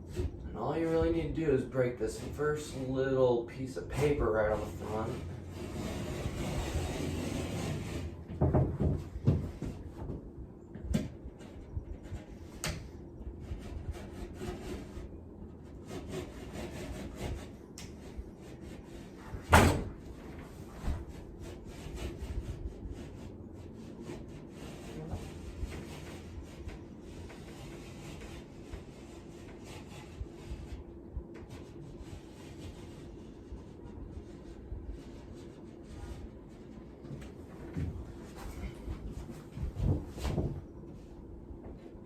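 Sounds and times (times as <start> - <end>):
utility knife scoring drywall: 3.9 - 8.2, 11.4 - 19.2
knocks: 8.3 - 10.2.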